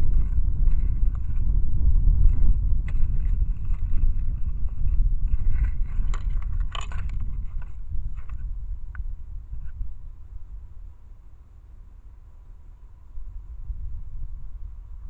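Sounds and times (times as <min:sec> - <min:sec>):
rustles and clicks: 0:00.0 - 0:01.6, 0:02.2 - 0:09.0
wind buffeting microphone: 0:00.0 - 0:11.0, 0:13.0 - 0:15.0.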